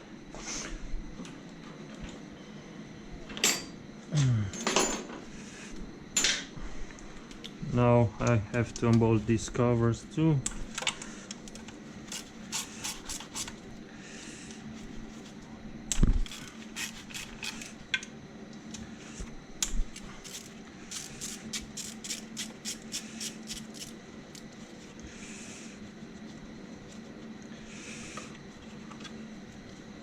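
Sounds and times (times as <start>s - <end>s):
hand ratchet clicking: 20.2s - 23.9s.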